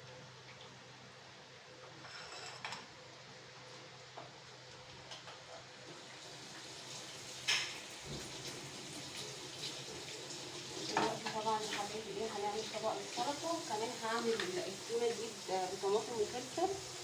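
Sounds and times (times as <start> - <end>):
potato chips sizzling in oil: 5.5 - 17.0.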